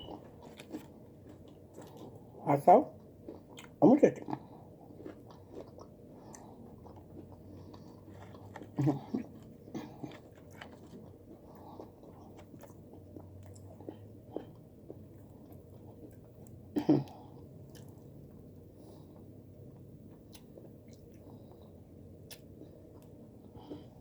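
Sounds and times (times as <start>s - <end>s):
person chewing fried chicken: 0.0s - 24.0s.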